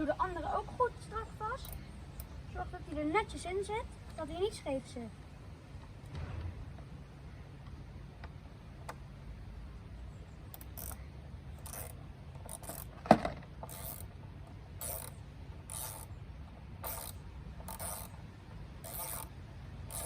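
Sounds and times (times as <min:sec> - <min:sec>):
hand tool ratcheting: 0:01.6 - 0:02.3, 0:10.5 - 0:11.0, 0:11.6 - 0:14.1, 0:14.8 - 0:16.1, 0:16.8 - 0:18.2, 0:18.8 - 0:19.3.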